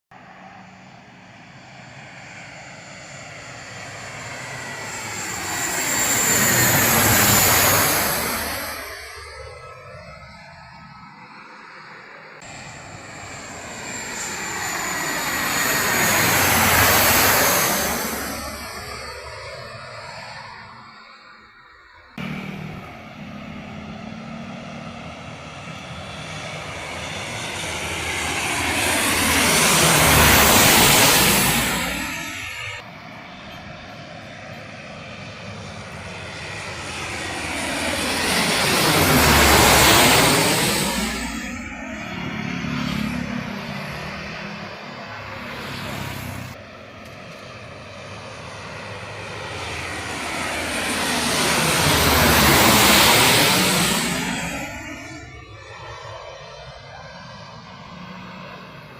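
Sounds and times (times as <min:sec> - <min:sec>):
turboprop aircraft passing overhead: 0:00.1 - 0:58.9
thin high whine: 0:25.5 - 0:34.7.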